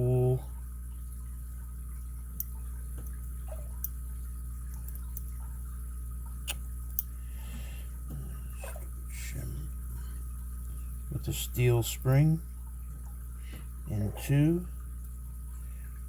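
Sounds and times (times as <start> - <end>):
low electrical hum: 0.0 - 16.0
small metal clicks: 4.6 - 5.4.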